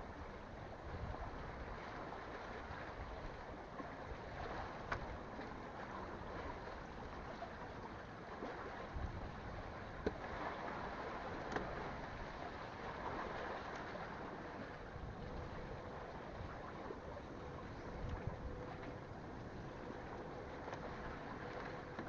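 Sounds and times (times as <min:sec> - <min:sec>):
sea water: 0:00.0 - 0:22.0
wind: 0:00.0 - 0:22.0.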